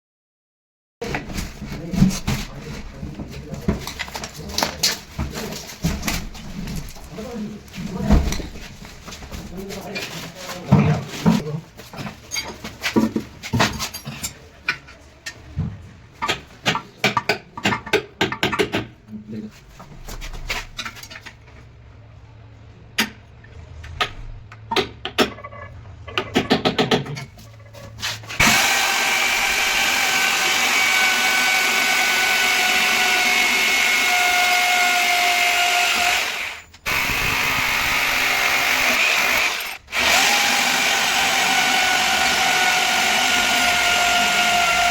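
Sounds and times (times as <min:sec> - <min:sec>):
sharp knocks and taps: 0:16.2 - 0:19.0
electric drill running: 0:28.4 - 0:44.9.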